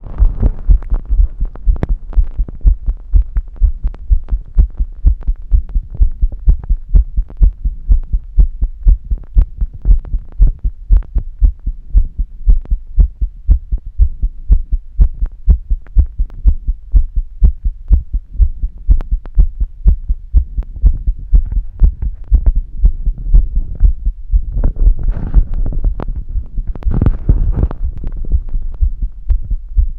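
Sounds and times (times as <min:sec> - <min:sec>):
heartbeat thumps: 0:00.0 - 0:29.9.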